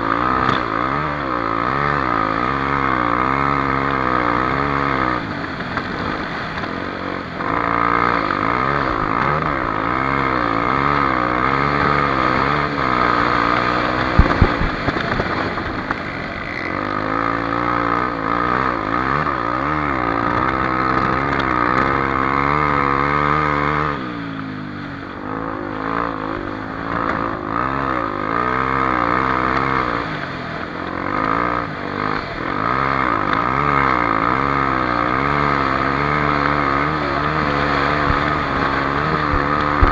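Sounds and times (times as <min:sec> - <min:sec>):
dirt bike engine revving: 0:00.0 - 0:39.9
sharp knocks: 0:14.0 - 0:16.0.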